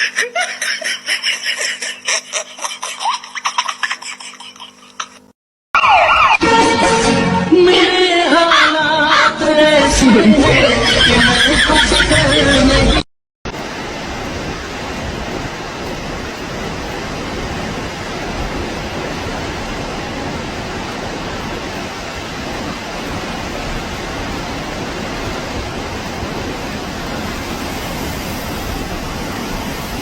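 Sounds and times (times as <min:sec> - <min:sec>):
steady rushing noise: 0:09.9 - 0:30.0.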